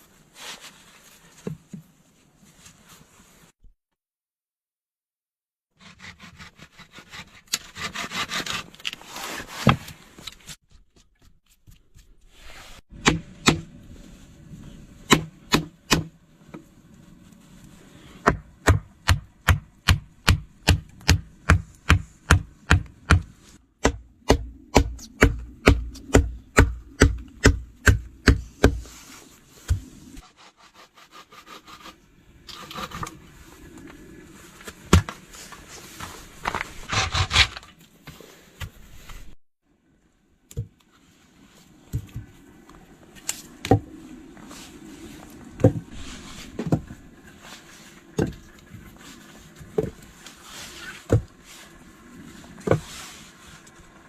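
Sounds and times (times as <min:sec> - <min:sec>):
rubbing and scraping: 0:05.7 - 0:12.9, 0:28.4 - 0:38.2, 0:44.4 - 0:54.0
tool striking wood: 0:18.3 - 0:28.8.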